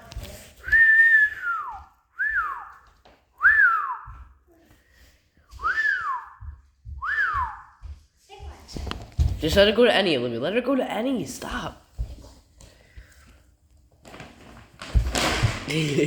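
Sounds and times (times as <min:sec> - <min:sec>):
person whistling: 0:00.6 - 0:02.8, 0:03.4 - 0:04.2, 0:05.5 - 0:07.7.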